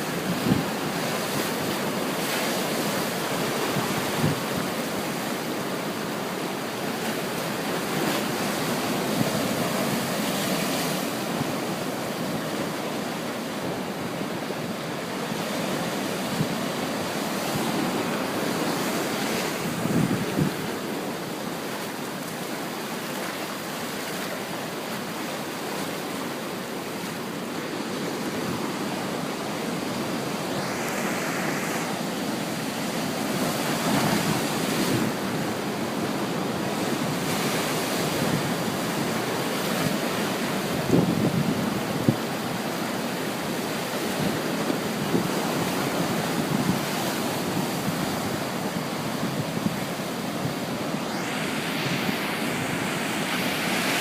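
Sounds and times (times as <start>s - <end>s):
waves breaking: 0.0s - 54.0s
wind buffeting microphone: 16.3s - 20.9s, 40.7s - 42.4s.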